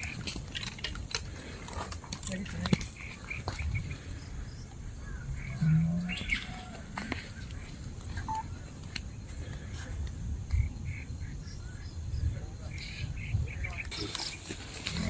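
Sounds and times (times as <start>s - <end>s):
birds chirping: 0.0s - 15.0s
low rumble: 4.5s - 6.9s.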